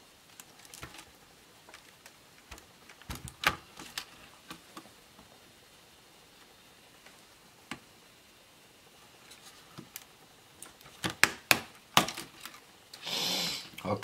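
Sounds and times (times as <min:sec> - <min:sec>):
plastic laptop parts clicking: 0:00.4 - 0:01.1, 0:01.7 - 0:04.8.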